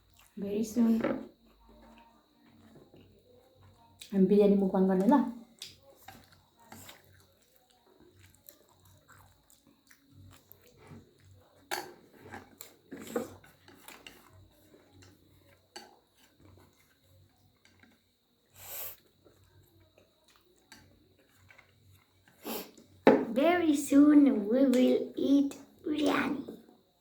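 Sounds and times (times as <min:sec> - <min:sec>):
person chewing food: 0:00.0 - 0:00.4, 0:01.3 - 0:04.1, 0:05.4 - 0:23.0.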